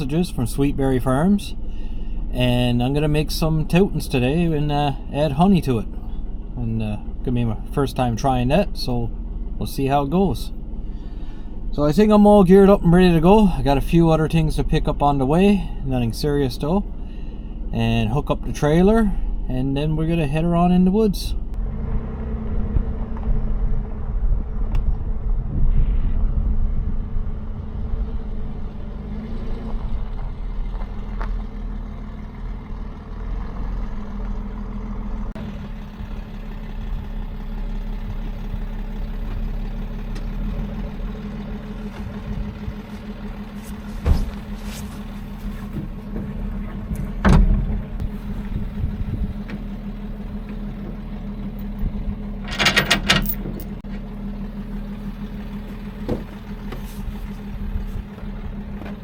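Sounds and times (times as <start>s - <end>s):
vehicle engine idling: 0.0s - 59.0s
short metallic clatter: 52.4s - 53.8s.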